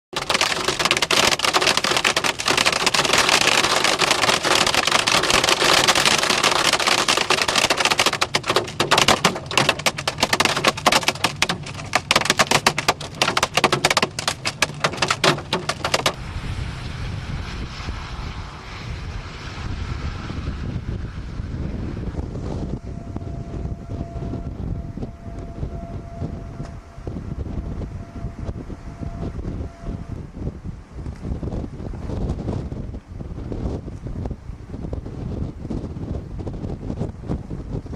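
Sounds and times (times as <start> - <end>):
heavy rain pelting a vehicle: 0.1 - 21.2
wind on the microphone: 0.2 - 37.9.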